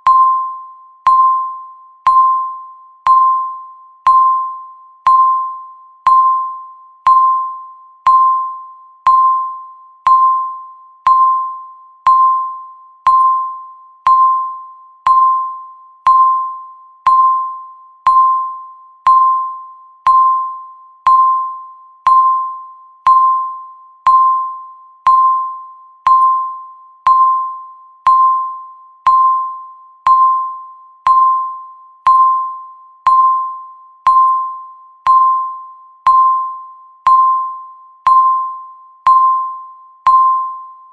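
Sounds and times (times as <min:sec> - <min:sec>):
electronic timer ticks: 0:29.0 - 0:39.3.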